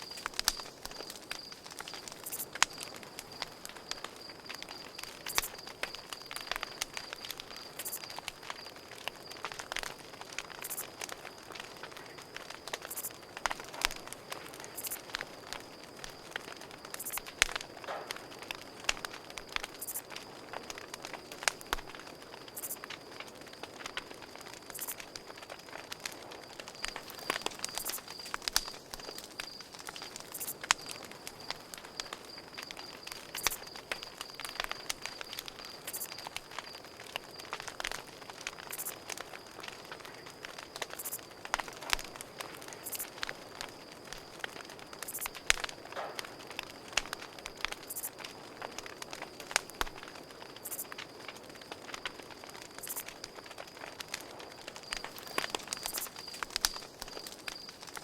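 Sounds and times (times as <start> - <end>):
campfire crackling and popping: 0.0 - 58.0
cricket chirping: 0.0 - 58.0.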